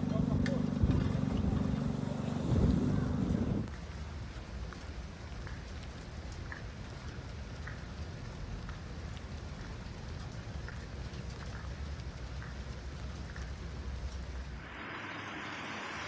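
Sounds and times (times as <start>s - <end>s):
steady rain falling: 3.6s - 16.0s
drops ticking on hard surface: 4.7s - 14.4s.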